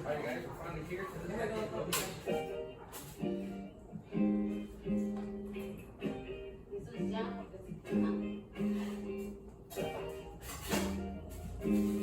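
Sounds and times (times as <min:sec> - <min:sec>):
acoustic guitar strumming chords: 0:04.2 - 0:12.0.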